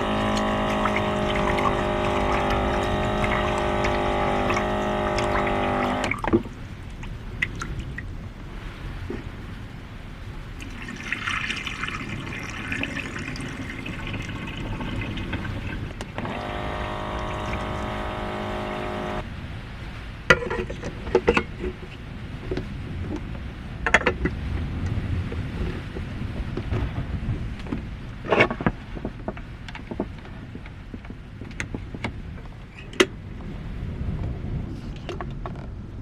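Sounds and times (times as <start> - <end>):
water running: 0.0 - 6.6, 10.6 - 19.2
steady even-pitched hum: 0.0 - 20.2.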